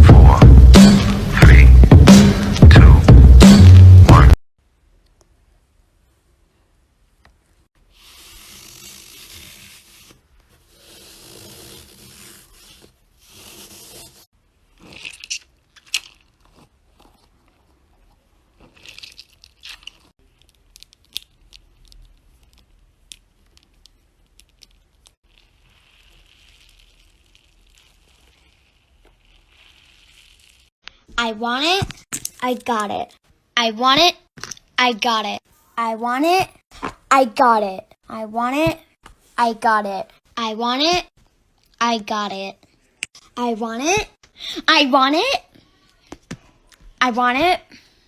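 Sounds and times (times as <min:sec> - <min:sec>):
tearing noises: 0:10.8 - 0:17.3, 0:18.6 - 0:30.7
crackles and sharp clicks: 0:18.8 - 0:31.0.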